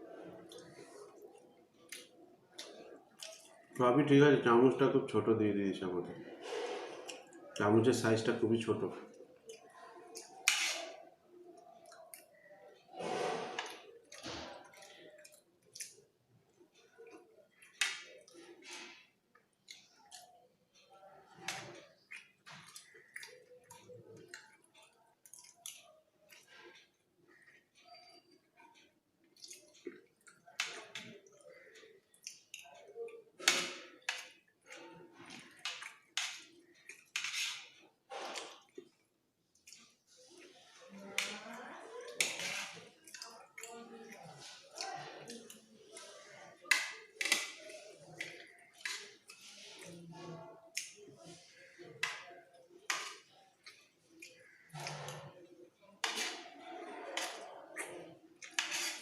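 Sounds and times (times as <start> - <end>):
chewing: 0.2 - 3.8, 9.1 - 12.8, 13.6 - 59.0
spoon scraping on a plate: 10.4 - 11.1, 35.2 - 38.6, 42.2 - 43.0, 57.1 - 59.0.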